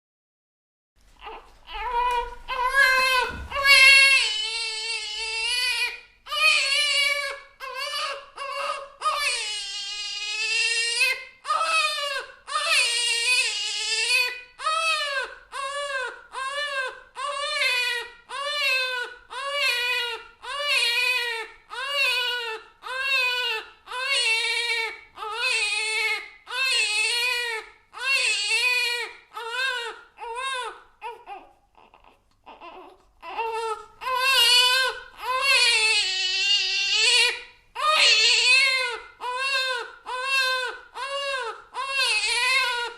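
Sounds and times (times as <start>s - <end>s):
infant crying: 1.2s - 42.9s.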